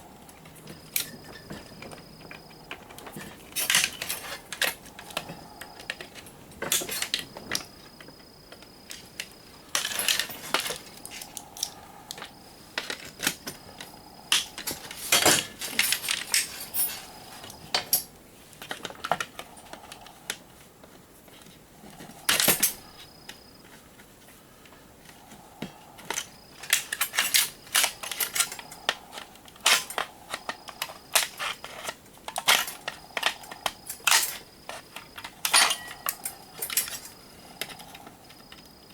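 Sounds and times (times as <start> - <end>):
small metal parts clinking: 2.7 - 7.7, 8.9 - 18.1, 22.3 - 22.9, 26.1 - 38.0.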